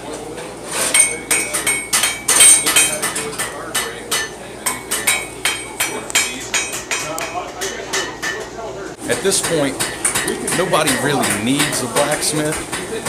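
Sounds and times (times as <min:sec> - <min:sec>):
hammer striking iron on anvil: 0:01.0 - 0:08.5.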